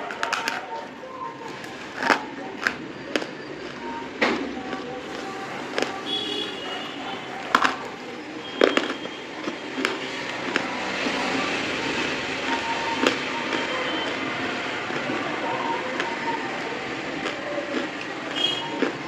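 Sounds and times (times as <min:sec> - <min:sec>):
brittle items crunching and cracking: 0:00.0 - 0:00.8, 0:01.5 - 0:03.9, 0:07.3 - 0:14.2.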